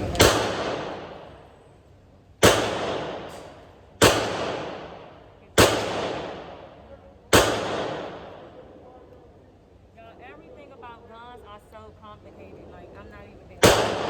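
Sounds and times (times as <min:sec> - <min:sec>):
echoing gunshots: 0:00.0 - 0:01.6, 0:02.4 - 0:08.8, 0:13.6 - 0:14.0.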